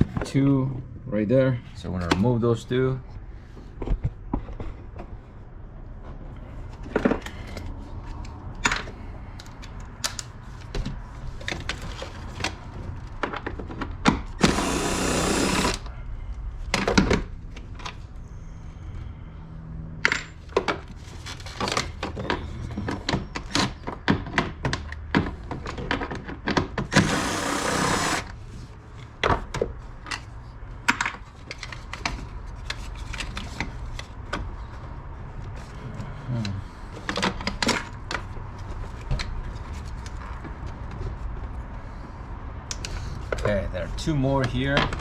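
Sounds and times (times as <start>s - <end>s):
hand tools clicking and knocking: 13.2s - 15.9s.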